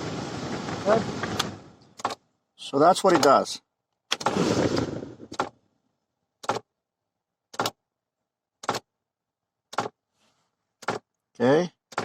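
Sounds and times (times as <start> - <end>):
actuator clacking in dashboard: 3.0 - 3.5.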